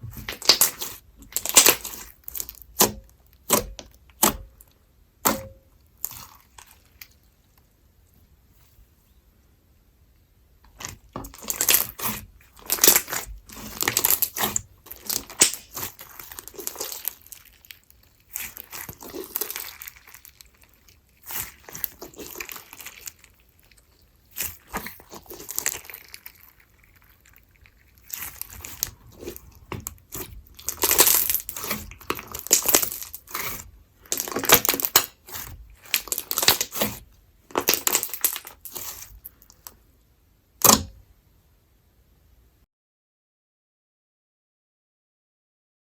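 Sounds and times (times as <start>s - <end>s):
slime crackling and popping: 0.1s - 7.2s, 10.7s - 39.7s.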